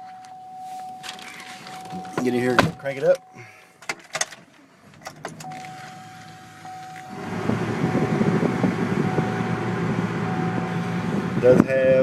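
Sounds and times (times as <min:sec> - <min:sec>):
engine starting and running: 0:04.2 - 0:11.7.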